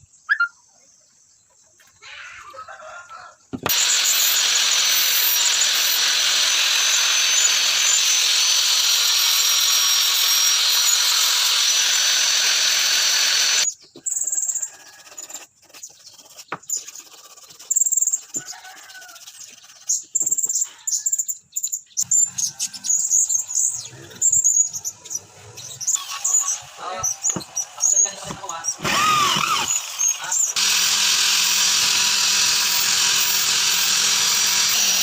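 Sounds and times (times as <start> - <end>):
power tool whining: 3.6 - 15.5, 22.0 - 35.0.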